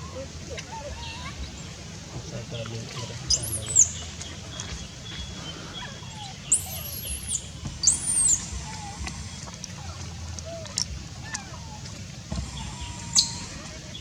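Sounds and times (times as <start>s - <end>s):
baby monkey screaming: 12.4s - 13.7s.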